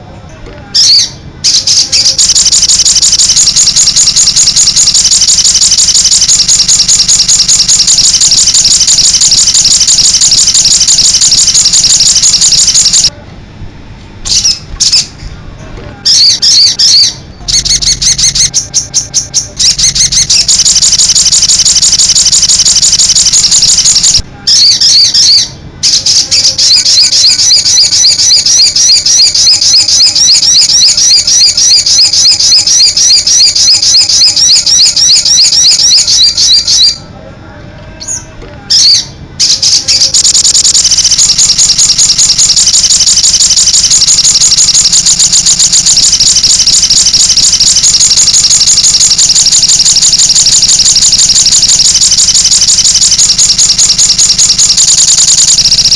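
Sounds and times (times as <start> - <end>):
bird chattering song: 0.8 - 13.1, 14.2 - 15.2, 16.1 - 37.0, 38.0 - 55.9.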